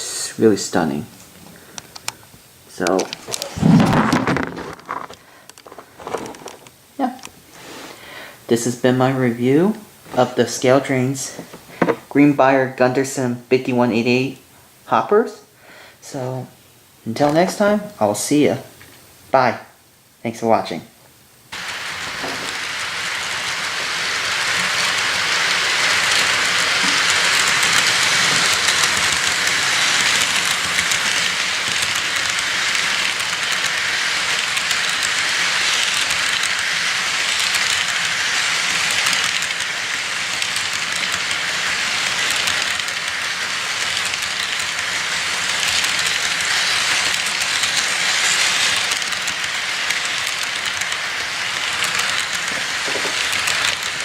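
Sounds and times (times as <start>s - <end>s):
train rolling on track: 21.6s - 54.0s.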